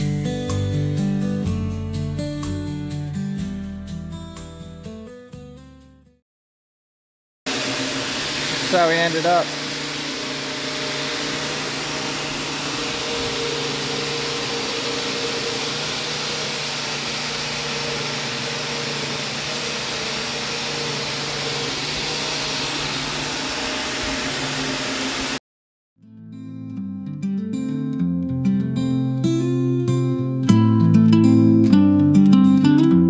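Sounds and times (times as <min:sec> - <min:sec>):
guitar music: 0:00.0 - 0:06.2, 0:26.0 - 0:33.0
machine humming and hissing: 0:07.5 - 0:25.4.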